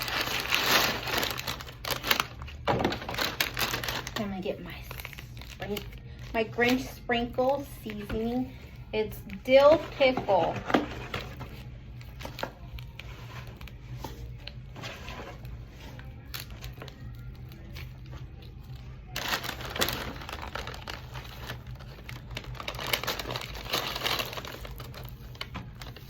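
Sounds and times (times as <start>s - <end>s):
paper bag rustling: 0.0s - 6.0s, 9.6s - 26.0s
seasoning packet crinkling and tearing: 16.2s - 25.4s.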